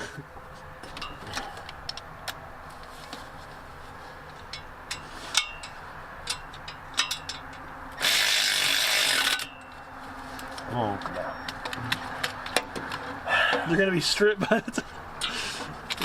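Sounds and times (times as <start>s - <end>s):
hand tools clinking: 4.4s - 8.4s
cordless power ratchet running: 8.0s - 9.5s.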